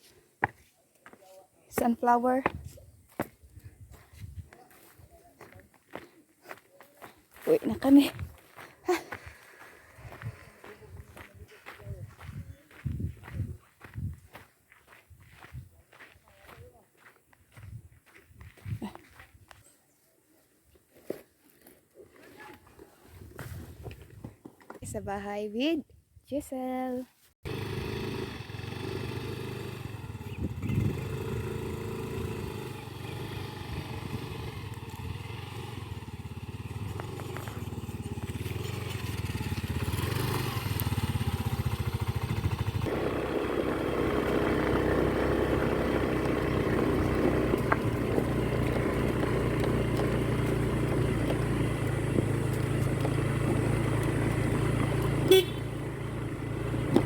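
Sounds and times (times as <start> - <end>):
road noise: 27.5 - 57.0
vehicle engine running: 27.5 - 57.0.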